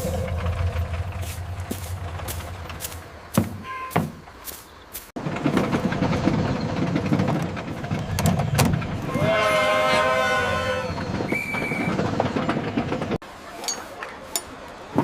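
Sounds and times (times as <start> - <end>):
train rumbling and clattering: 0.0 - 15.0
train whistle: 9.1 - 12.0.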